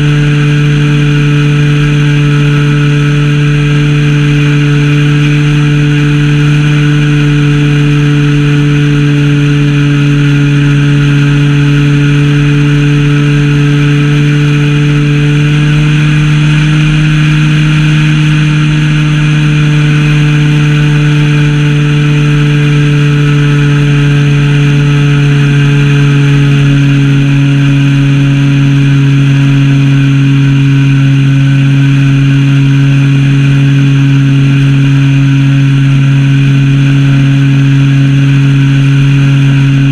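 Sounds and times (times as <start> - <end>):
model plane engine running: 0.0 - 39.9.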